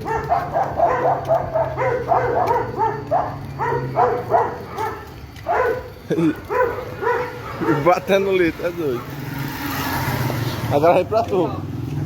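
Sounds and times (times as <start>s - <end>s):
dogs barking rapidly: 0.0s - 9.3s.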